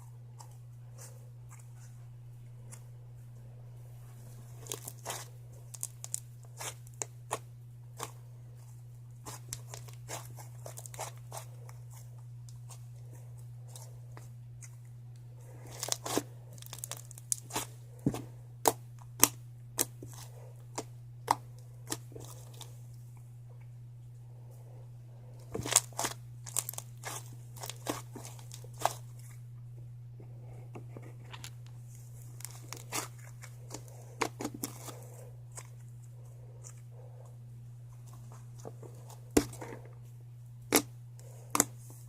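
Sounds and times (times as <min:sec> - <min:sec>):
slime crackling and popping: 0:04.6 - 0:07.4, 0:15.7 - 0:17.8, 0:25.5 - 0:29.0.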